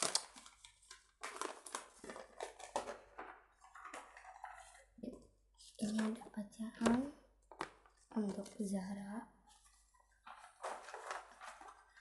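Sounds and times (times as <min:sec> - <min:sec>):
paper rustling and crinkling: 0:00.0 - 0:05.0, 0:09.5 - 0:12.0.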